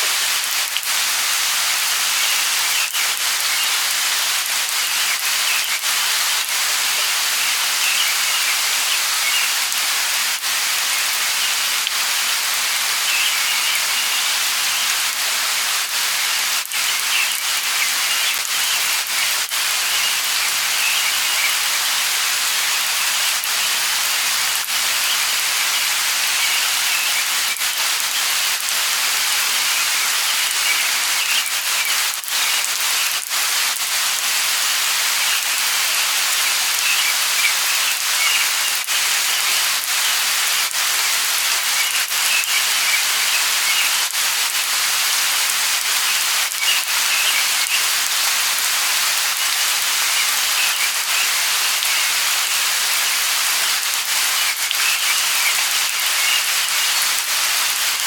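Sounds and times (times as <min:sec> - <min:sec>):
light rain hissing: 0:00.0 - 0:58.0
water drips ticking: 0:00.4 - 0:01.0, 0:22.6 - 0:58.0.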